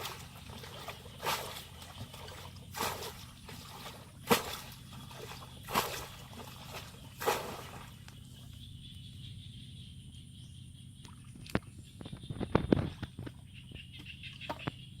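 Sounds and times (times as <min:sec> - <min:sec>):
water trickling: 0:00.0 - 0:08.2
water splashing in shallow water: 0:00.0 - 0:08.4.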